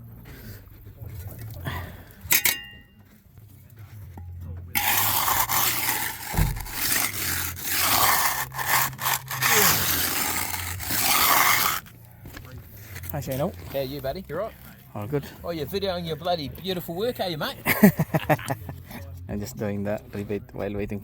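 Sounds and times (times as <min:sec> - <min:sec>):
hand tool scraping concrete: 0:02.2 - 0:02.9, 0:04.7 - 0:15.2
metallic clink: 0:02.3 - 0:03.0.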